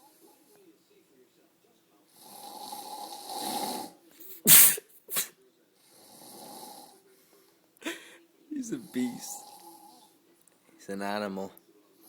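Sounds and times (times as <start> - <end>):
man snoring: 2.2 - 4.0, 6.0 - 7.0, 8.6 - 10.1
sharp snort: 2.2 - 5.3.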